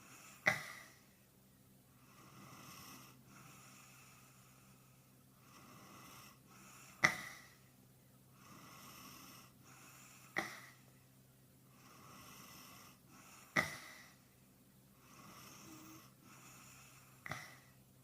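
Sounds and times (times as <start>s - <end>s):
man snoring: 2.0s - 4.6s, 5.4s - 7.2s, 8.4s - 10.4s, 11.8s - 14.1s, 15.0s - 17.7s.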